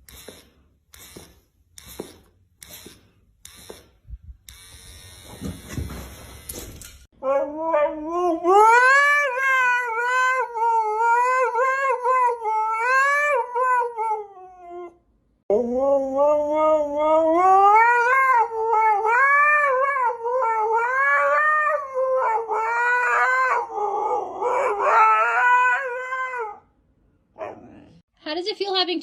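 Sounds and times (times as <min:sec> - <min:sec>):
pet howling: 0:07.2 - 0:26.7.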